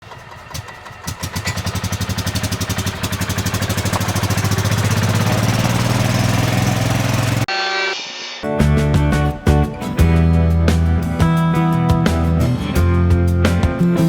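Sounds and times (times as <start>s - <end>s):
small gas engine running: 0.0s - 7.5s
music: 8.4s - 14.0s.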